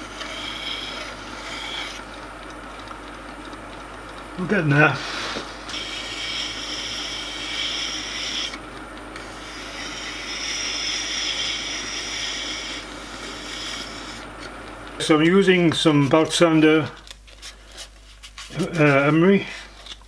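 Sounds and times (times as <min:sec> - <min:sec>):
hand tool rubbing on lathe work: 0:00.0 - 0:02.1, 0:04.4 - 0:08.6, 0:09.2 - 0:16.4, 0:18.4 - 0:19.6.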